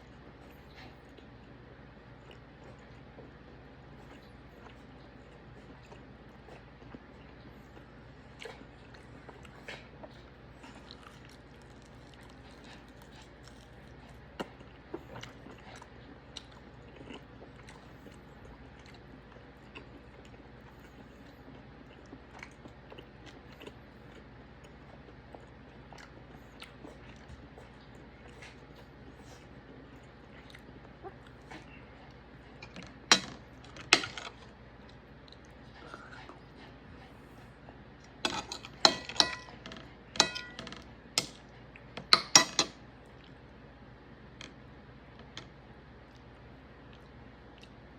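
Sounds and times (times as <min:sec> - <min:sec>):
person chewing steak: 0:00.0 - 0:42.4
low steady hum: 0:00.0 - 0:47.9
cutlery clinking on plate: 0:38.3 - 0:39.6, 0:40.2 - 0:40.7.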